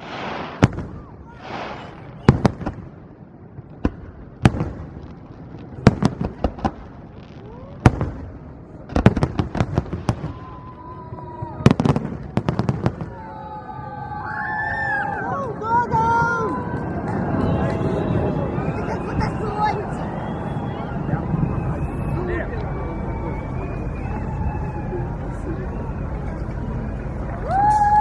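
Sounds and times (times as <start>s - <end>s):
fireworks bursting: 0.0s - 13.3s.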